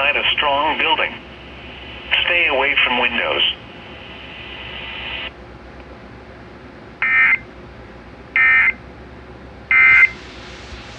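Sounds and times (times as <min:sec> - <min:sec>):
steady hiss: 0:00.0 - 0:05.3, 0:10.0 - 0:10.9.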